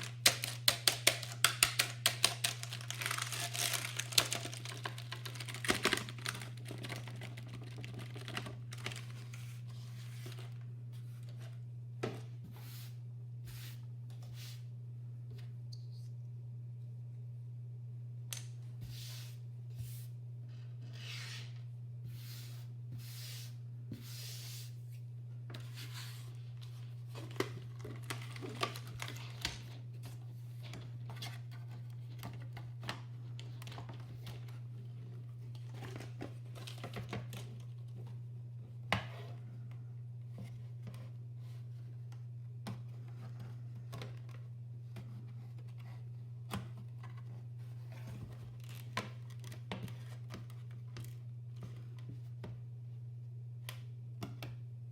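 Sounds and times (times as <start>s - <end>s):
plastic keyboard parts scraping: 0.0s - 9.6s
steady low hum: 0.0s - 54.9s.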